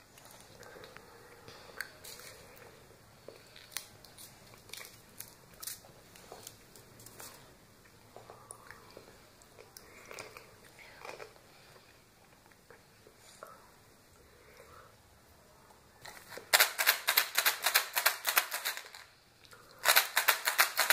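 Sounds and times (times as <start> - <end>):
plastic eggs and candy clicking: 16.0 - 19.1, 19.7 - 20.9.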